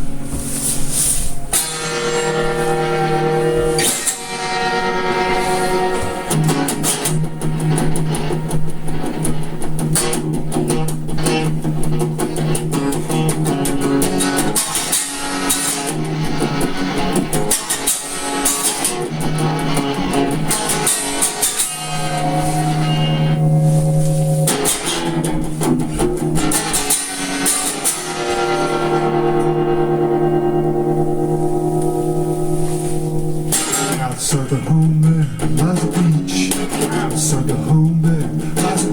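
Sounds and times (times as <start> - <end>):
guitar strumming: 0.0 - 38.9
held low note: 22.1 - 25.6, 29.0 - 34.0.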